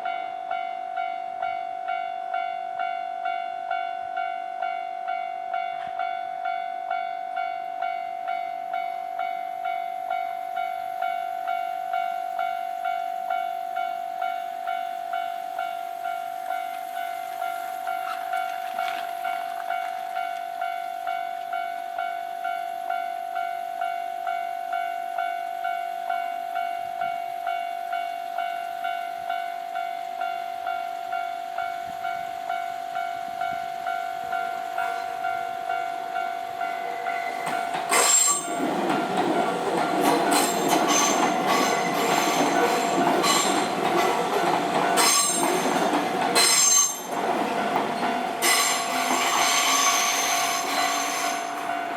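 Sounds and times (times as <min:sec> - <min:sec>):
train wheel clatter: 0:15.2 - 0:20.8, 0:34.4 - 0:51.9
level crossing bell ringing: 0:34.4 - 0:49.2
high wheel squeal: 0:36.6 - 0:51.9.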